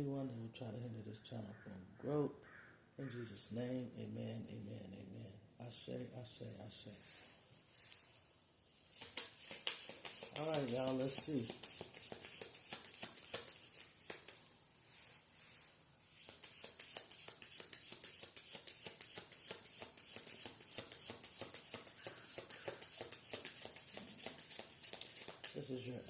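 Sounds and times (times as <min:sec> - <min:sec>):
cards being shuffled: 0:08.8 - 0:15.2, 0:16.1 - 0:26.0.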